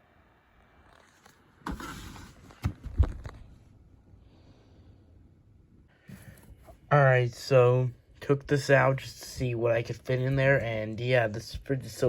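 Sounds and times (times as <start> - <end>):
rustling and scraping: 0.9 - 3.6.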